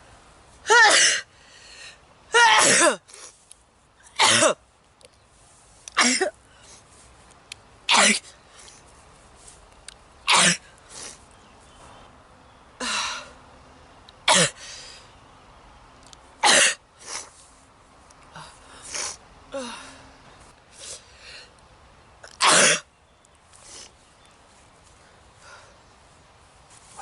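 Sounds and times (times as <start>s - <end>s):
person sneezing: 2.4s - 3.2s.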